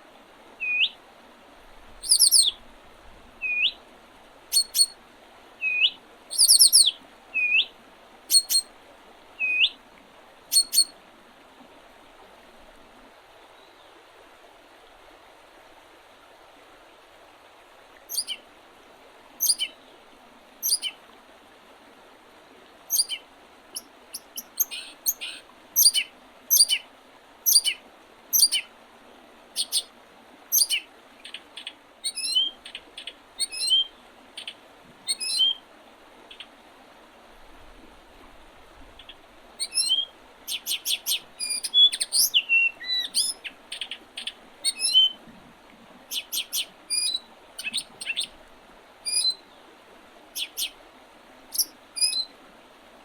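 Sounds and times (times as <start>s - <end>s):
faint steady hiss: 0.0s - 53.0s
birds chirping: 0.6s - 1.0s, 2.0s - 2.6s, 3.4s - 3.8s, 4.5s - 4.9s, 5.6s - 7.7s, 8.3s - 8.7s, 9.4s - 9.8s, 10.5s - 10.9s, 18.1s - 18.4s, 19.4s - 19.8s, 20.6s - 20.9s, 22.9s - 23.2s, 23.8s - 26.8s, 46.1s - 48.3s.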